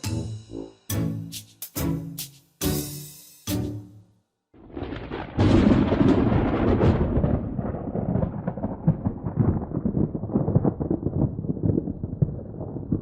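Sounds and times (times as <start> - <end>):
low crackly rumbling: 4.6 - 13.0.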